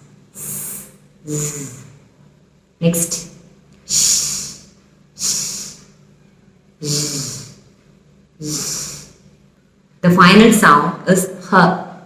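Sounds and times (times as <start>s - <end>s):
woman making hissing sh sounds: 0.4s - 2.0s, 3.9s - 6.0s, 6.8s - 7.7s, 8.4s - 9.2s.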